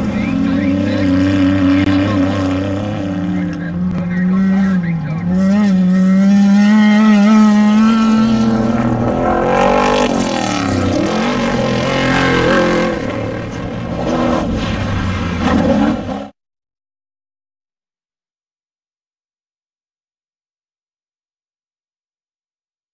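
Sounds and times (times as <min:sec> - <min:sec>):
race vehicle engine revving high: 0:00.0 - 0:16.3.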